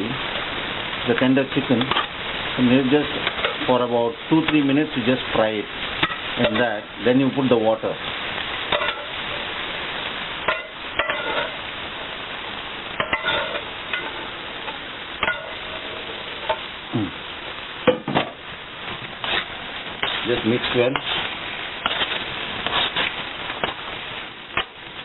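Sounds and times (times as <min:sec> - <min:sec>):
chicken sizzling in a pan: 0:00.0 - 0:25.0
spoon stirring and knocking pan: 0:03.1 - 0:03.7, 0:06.0 - 0:06.8, 0:08.7 - 0:09.4, 0:10.4 - 0:11.6, 0:13.0 - 0:16.7, 0:17.8 - 0:23.8.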